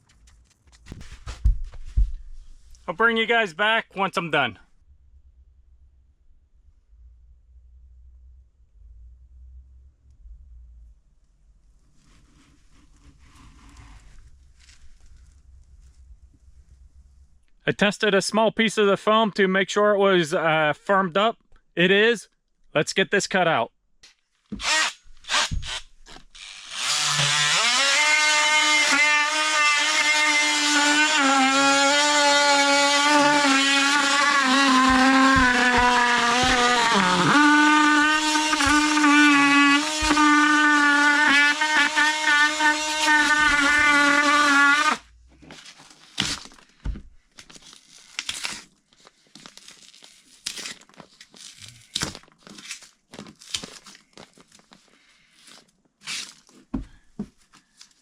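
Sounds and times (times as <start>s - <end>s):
power tool motor cutting foam: 24.6s - 45.0s.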